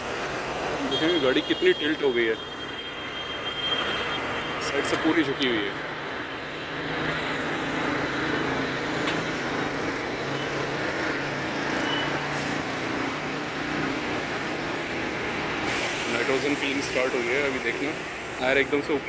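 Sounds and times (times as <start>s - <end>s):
tyre inflation machine hissing: 12.2s - 13.3s, 15.2s - 19.0s.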